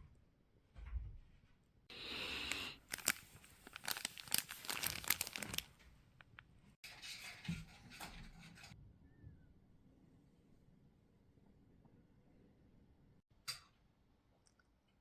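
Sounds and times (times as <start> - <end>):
crinkling and rustling: 1.9 - 6.4.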